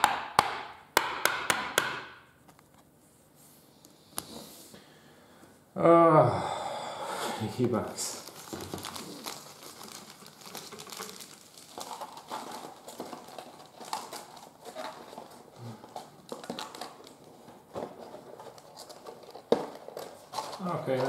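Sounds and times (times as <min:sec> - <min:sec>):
card wrappers crinkling: 0:07.6 - 0:21.0.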